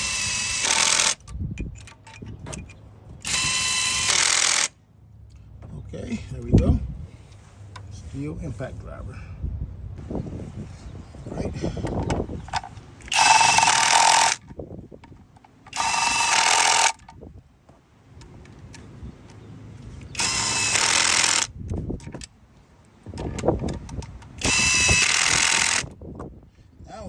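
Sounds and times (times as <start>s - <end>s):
impact driver hammering: 13.1s - 14.4s.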